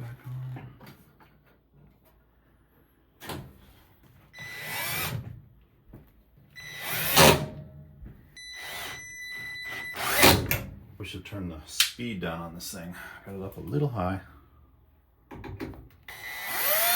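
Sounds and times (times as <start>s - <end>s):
power drill driving screws: 4.4s - 5.2s, 6.7s - 7.4s, 8.6s - 9.1s, 9.7s - 10.6s, 16.1s - 16.9s.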